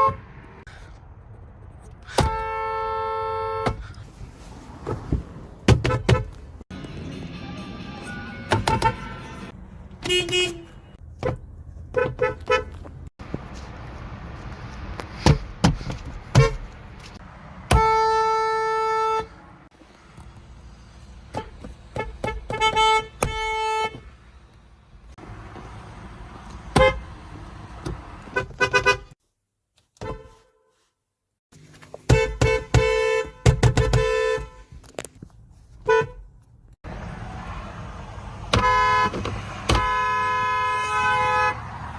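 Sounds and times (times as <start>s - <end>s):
car horn honking: 0.0s - 0.4s, 2.1s - 3.9s, 7.3s - 11.0s, 11.9s - 12.8s, 17.7s - 19.4s, 21.3s - 24.2s, 26.7s - 27.2s, 28.3s - 29.2s, 32.1s - 34.7s, 35.8s - 36.3s, 38.5s - 41.8s
traffic noise: 0.0s - 29.2s, 31.5s - 41.9s.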